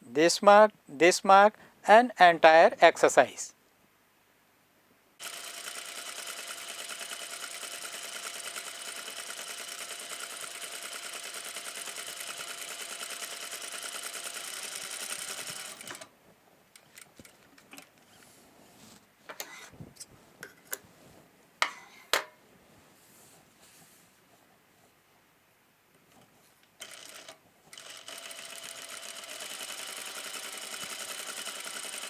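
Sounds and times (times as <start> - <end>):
sewing machine stitching: 5.2 - 16.1, 26.8 - 32.0.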